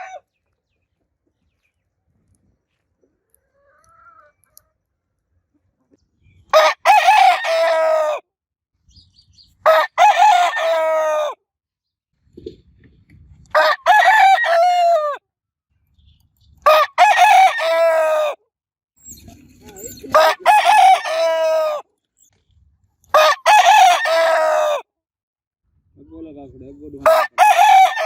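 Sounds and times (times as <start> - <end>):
rooster crowing: 0.0 - 0.2, 6.5 - 8.2, 9.6 - 11.4, 13.5 - 15.2, 16.7 - 18.4, 20.0 - 21.8, 23.1 - 24.8, 27.0 - 28.0.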